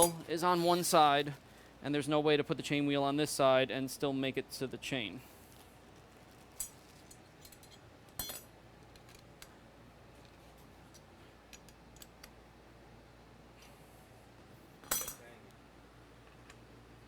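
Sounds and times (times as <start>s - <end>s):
metallic clinks of tools: 14.8s - 15.3s.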